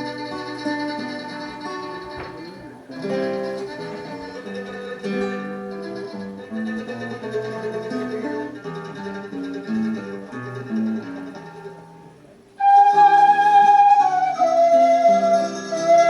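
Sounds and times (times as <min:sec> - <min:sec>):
plucked acoustic guitar melody: 0:00.0 - 0:16.0
flute held note: 0:12.6 - 0:16.0.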